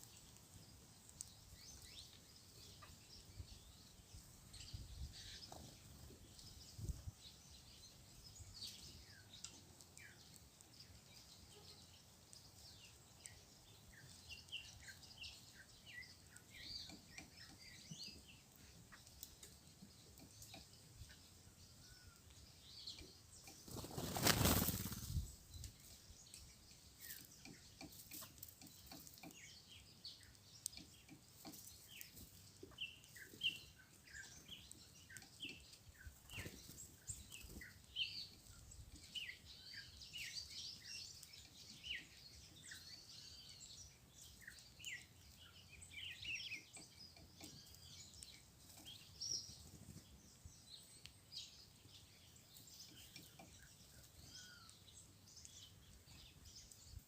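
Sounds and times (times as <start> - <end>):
songbirds chirping: 0.0 - 57.0
wings fluttering: 23.5 - 25.5, 36.1 - 37.8, 48.6 - 50.2.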